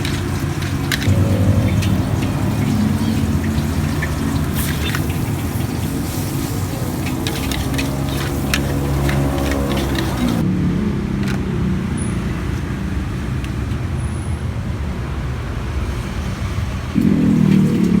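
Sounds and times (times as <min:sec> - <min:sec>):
vehicle engine running close by: 0:00.0 - 0:12.7, 0:17.0 - 0:18.0.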